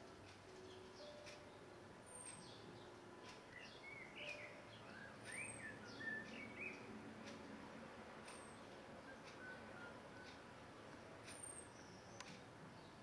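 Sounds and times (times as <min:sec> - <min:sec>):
low warbling birdsong: 0:00.7 - 0:07.0, 0:08.4 - 0:10.5, 0:11.3 - 0:13.0.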